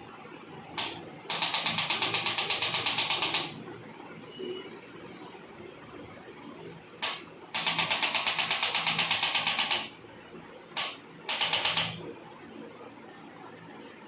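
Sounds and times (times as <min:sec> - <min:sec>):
rapid mechanical rattling: 0:00.8 - 0:03.6, 0:07.0 - 0:10.0, 0:10.8 - 0:12.0.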